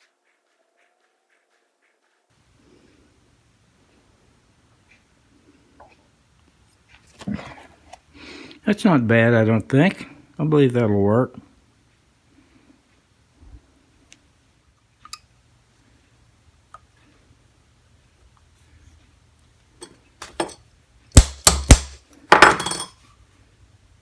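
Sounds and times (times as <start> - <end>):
metal parts clinking on workbench: 20.2 - 20.6, 21.2 - 23.0.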